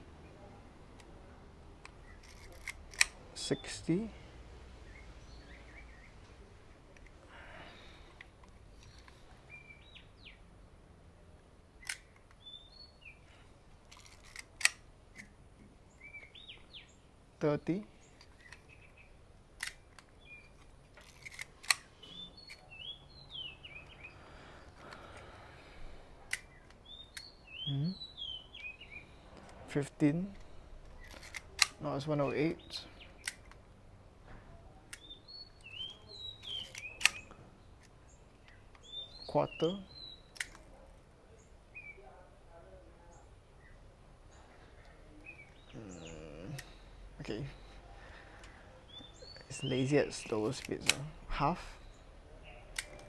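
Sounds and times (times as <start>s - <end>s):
bird chirps: 8.8s - 10.4s, 11.8s - 13.4s, 15.9s - 17.0s, 22.0s - 24.7s, 26.5s - 29.4s, 35.0s - 42.0s, 43.1s - 52.8s.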